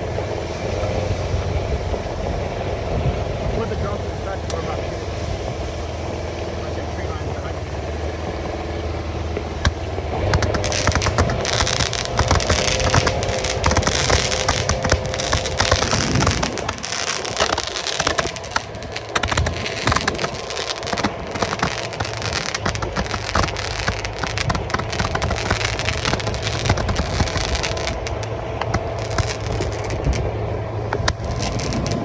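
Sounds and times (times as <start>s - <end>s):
fireworks crackling: 0.0s - 32.0s
steady low hum: 0.0s - 32.0s.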